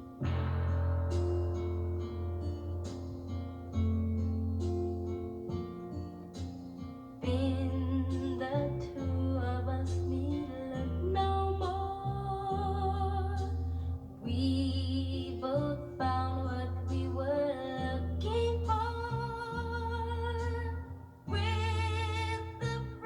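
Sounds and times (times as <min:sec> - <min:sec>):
plucked guitar: 0:00.0 - 0:23.0
steady bass: 0:00.0 - 0:23.0
person singing: 0:07.2 - 0:23.0.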